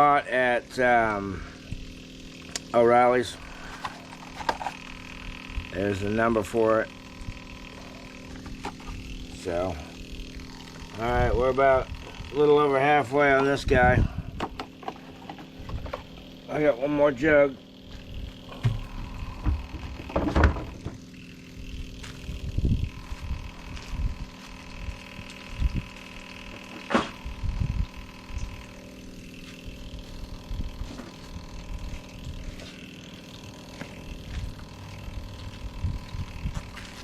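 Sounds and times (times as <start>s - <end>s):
electric fuel pump humming: 0.0s - 37.0s
handling knocks and thumps: 18.5s - 21.0s.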